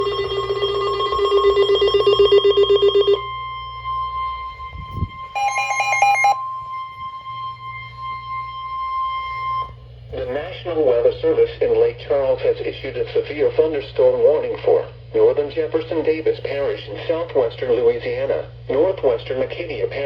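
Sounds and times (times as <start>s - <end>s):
steady single-pitch alert tone: 0.0s - 4.6s, 5.2s - 9.7s
pulsing electronic alarm: 0.0s - 9.8s
alternating electronic beeps: 5.2s - 9.7s.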